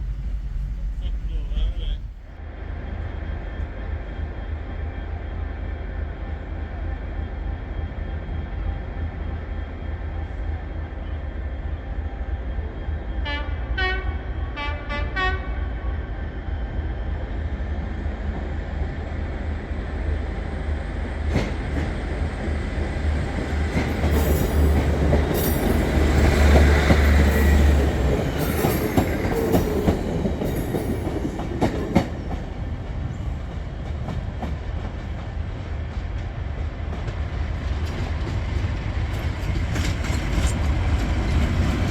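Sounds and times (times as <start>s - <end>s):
train passing: 0.0s - 41.9s
train horn blasts: 13.2s - 16.0s.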